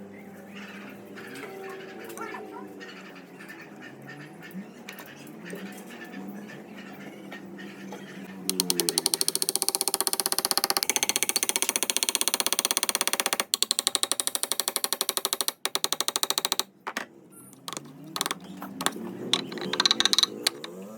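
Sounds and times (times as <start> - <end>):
power tool clicking: 8.5 - 16.7, 17.6 - 20.8.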